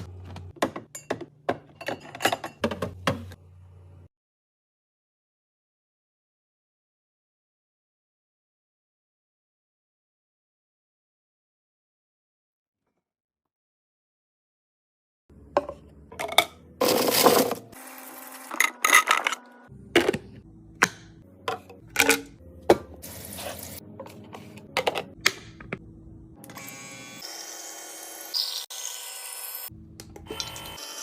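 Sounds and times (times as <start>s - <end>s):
jars clinking and knocking: 0.6s - 3.3s, 21.4s - 23.0s.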